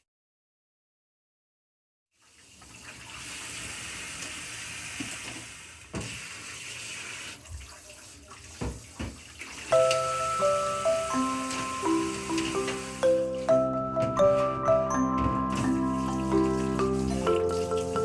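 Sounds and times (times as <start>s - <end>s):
tap running into sink: 5.0s - 6.2s, 8.6s - 13.1s, 13.9s - 18.0s.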